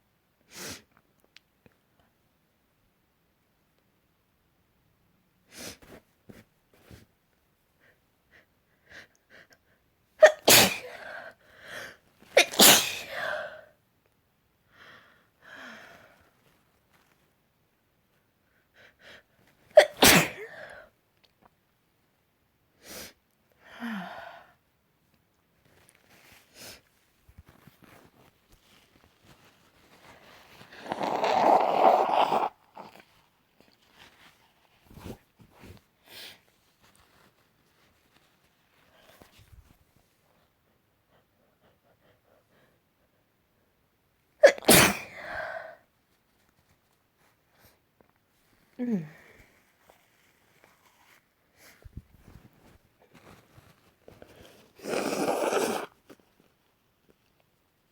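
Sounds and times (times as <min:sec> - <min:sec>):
woman sneezing: 0:10.2 - 0:11.2, 0:12.4 - 0:13.6, 0:19.8 - 0:20.7, 0:44.4 - 0:45.8.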